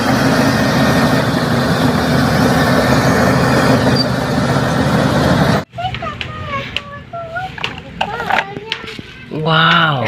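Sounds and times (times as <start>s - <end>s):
bulldozer engine running: 0.0s - 5.7s.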